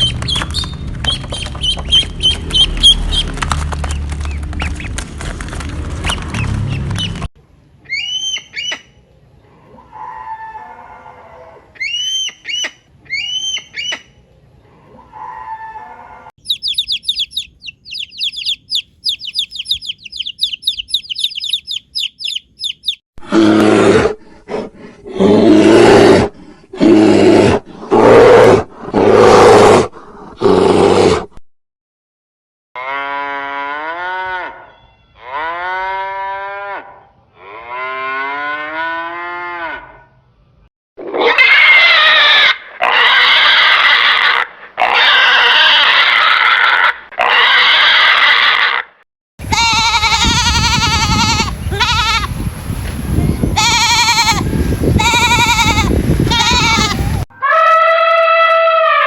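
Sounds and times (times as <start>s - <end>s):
high animal chirps: 7.9s - 8.9s, 16.4s - 23.0s
drawn-out pitched animal calls: 14.8s - 23.0s, 41.3s - 52.4s, 53.6s - 59.0s
harsh roaring grunts: 23.2s - 31.3s.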